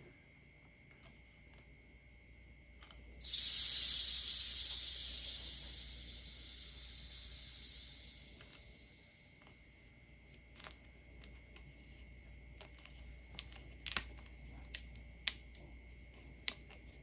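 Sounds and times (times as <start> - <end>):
soda fizzing hiss: 3.2 - 9.0.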